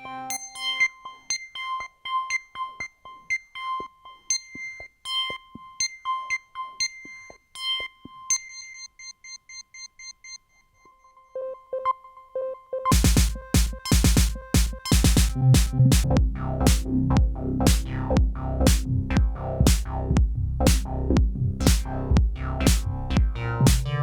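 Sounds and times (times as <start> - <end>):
bell-like synthesizer note: 0.3 - 2.9.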